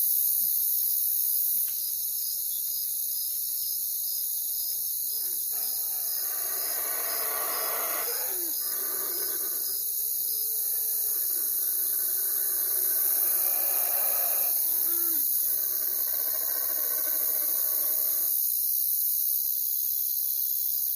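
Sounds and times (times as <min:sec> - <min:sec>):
crickets and insects chirping: 0:00.0 - 0:20.9
owl hoots: 0:05.2 - 0:18.3.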